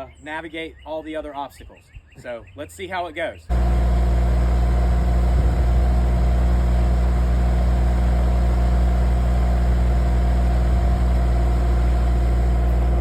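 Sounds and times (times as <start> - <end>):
diesel engine droning: 3.5 - 13.0.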